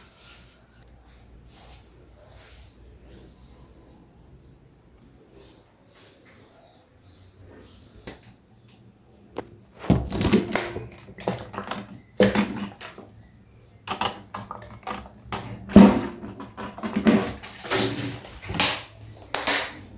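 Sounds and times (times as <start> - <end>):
hard objects knocking and clattering: 9.4 - 19.9.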